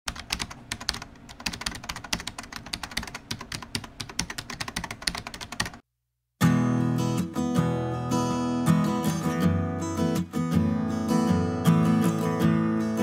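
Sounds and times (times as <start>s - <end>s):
keyboard typing clicks: 0.1s - 5.8s
acoustic guitar music: 6.4s - 13.0s.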